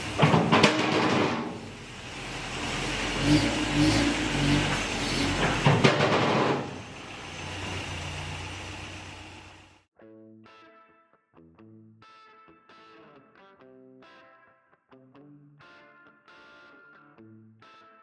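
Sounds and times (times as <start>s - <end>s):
vehicle engine revving: 0.0s - 9.8s.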